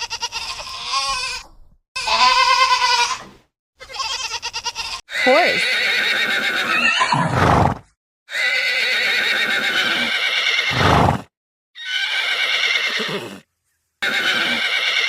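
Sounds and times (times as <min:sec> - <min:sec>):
horse neighing: 0:05.1 - 0:15.0.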